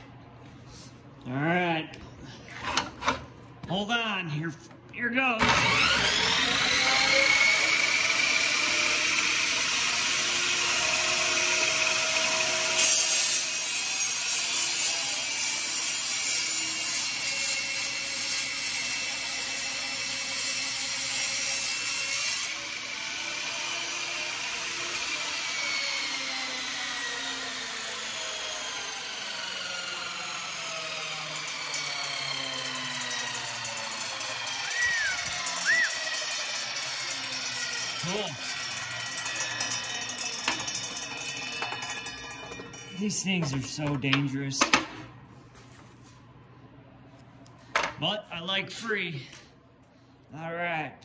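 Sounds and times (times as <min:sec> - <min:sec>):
table saw cutting wood: 0:05.4 - 0:45.0.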